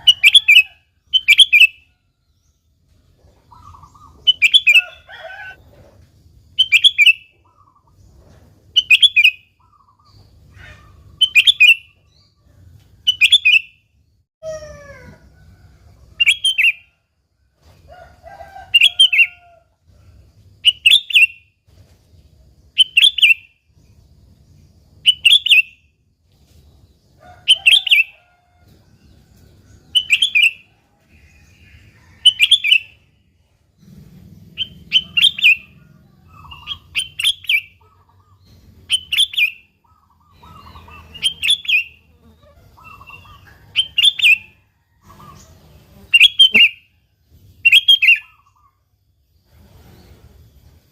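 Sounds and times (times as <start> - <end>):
bird chattering call: 33.9 - 44.5, 46.2 - 46.8.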